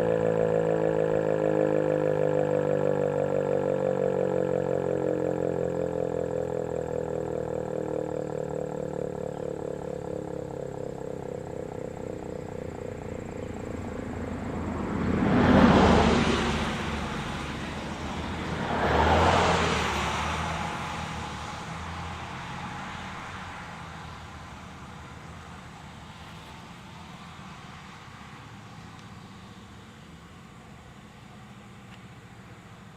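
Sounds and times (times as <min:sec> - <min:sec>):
low hum: 0:00.0 - 0:32.9
road vehicles passing by: 0:00.0 - 0:32.9.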